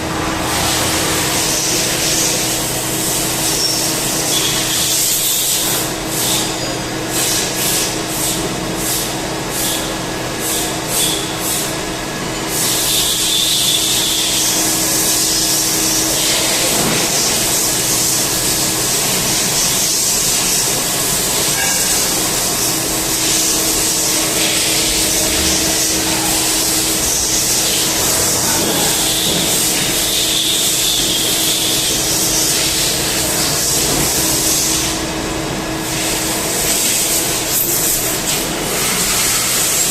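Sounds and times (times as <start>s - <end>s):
machine hum: 0.0s - 3.2s, 20.0s - 36.7s.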